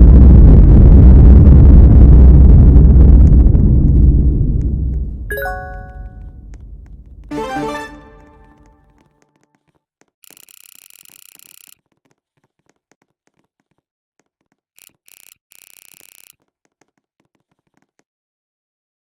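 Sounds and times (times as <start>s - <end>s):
electronic ringing tone: 5.3s - 6.2s.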